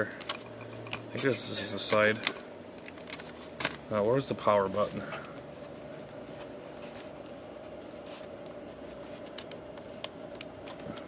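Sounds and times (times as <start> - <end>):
steady low hum: 0.0 - 11.0
hands handling plastic case: 4.7 - 11.0.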